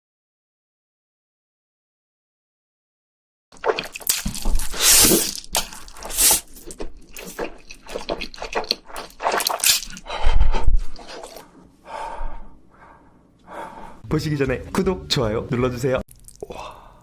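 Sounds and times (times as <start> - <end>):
crunchy bites: 3.6 - 10.1
wet squishy chewing: 3.6 - 11.5, 16.1 - 16.6.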